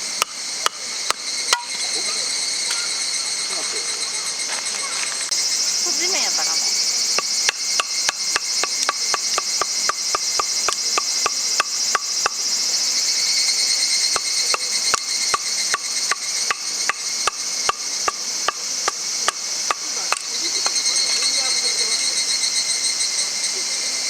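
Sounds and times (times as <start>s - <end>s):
insect chorus: 0.0s - 24.0s
hammer blows on metal: 0.2s - 1.8s.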